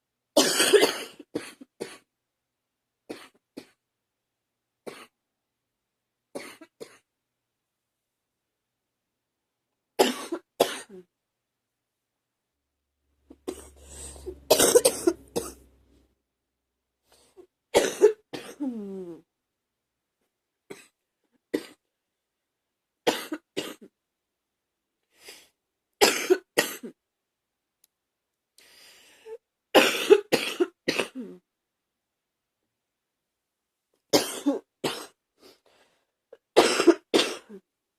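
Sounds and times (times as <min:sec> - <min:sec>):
person coughing hard: 0:00.4 - 0:02.0, 0:10.0 - 0:11.0, 0:13.4 - 0:15.6, 0:17.8 - 0:18.8, 0:23.1 - 0:23.9, 0:26.0 - 0:27.0, 0:29.8 - 0:31.4, 0:34.2 - 0:35.2, 0:36.6 - 0:37.6.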